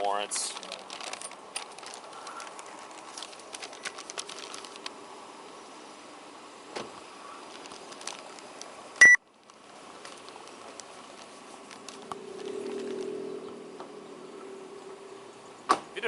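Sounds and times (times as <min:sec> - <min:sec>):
short electronic beep: 0:09.0 - 0:09.2.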